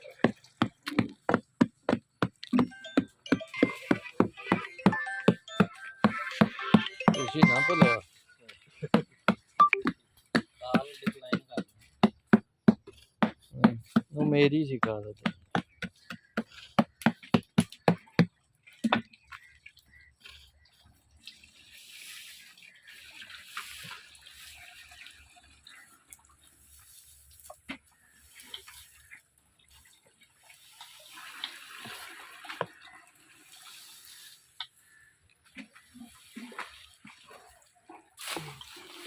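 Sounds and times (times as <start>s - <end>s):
liquid splashing and pouring: 21.1s - 27.3s, 29.7s - 34.6s, 35.8s - 39.0s.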